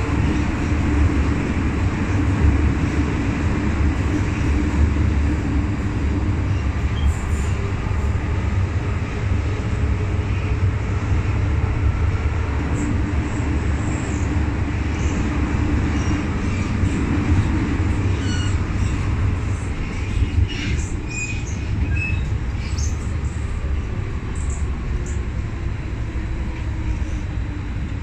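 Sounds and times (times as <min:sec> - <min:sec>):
train wheels rumbling on track: 0:00.0 - 0:28.0
faint high squeals: 0:18.1 - 0:18.6.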